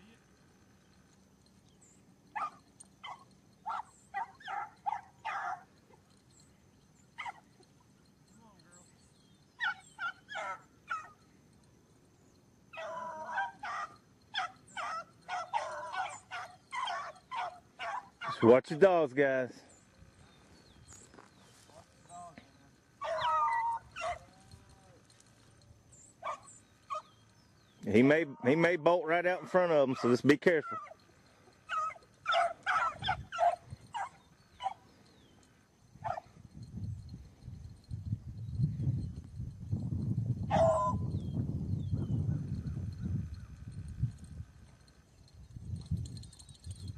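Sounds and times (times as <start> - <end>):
dogs baying and yelping: 0.4 - 18.6, 19.6 - 28.6, 29.4 - 38.0, 40.4 - 46.9.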